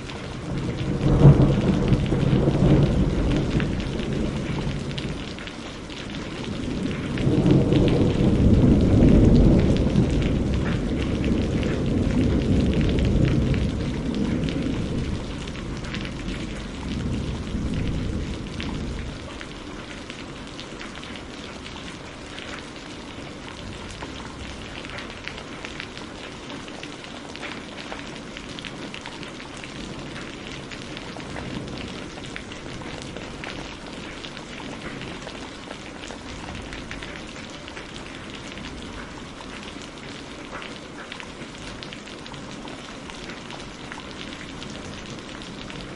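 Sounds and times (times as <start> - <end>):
thunder rumbling: 0.0 - 25.9, 28.0 - 40.6, 41.4 - 45.9
steady rain: 0.0 - 45.9.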